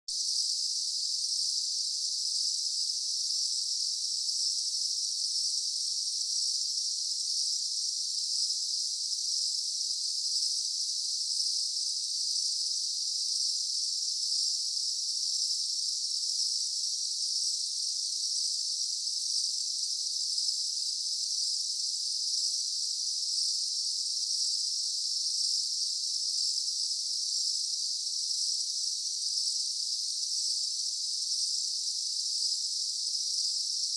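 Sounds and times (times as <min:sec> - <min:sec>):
insects buzzing: 0:21.2 - 0:33.9.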